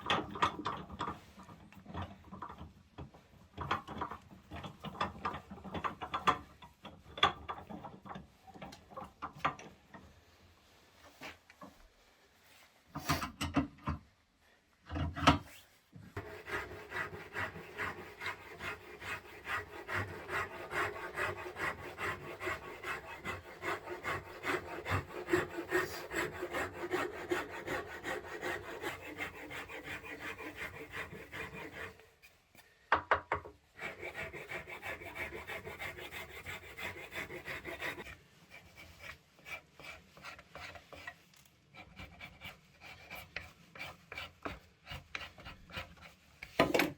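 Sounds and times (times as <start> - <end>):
rasping wood: 16.2 - 32.1, 33.8 - 46.7.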